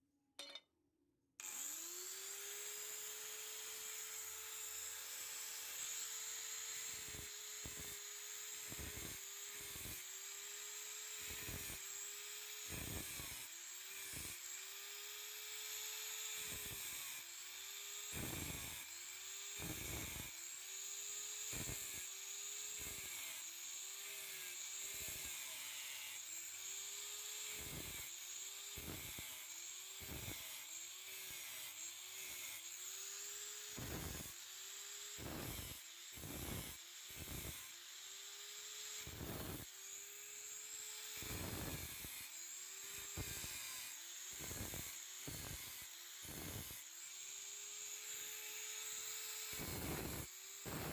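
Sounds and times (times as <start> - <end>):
electric grinder motor whine: 1.4 - 50.9
grinding hiss on steel: 35.2 - 37.6, 44.4 - 46.8, 49.5 - 50.9.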